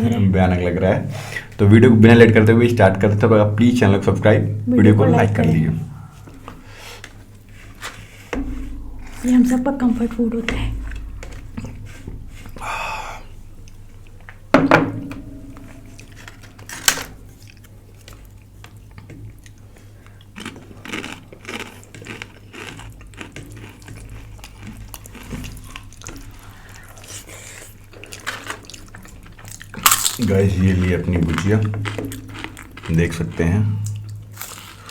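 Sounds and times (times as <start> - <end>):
chewing: 15.6 - 34.9.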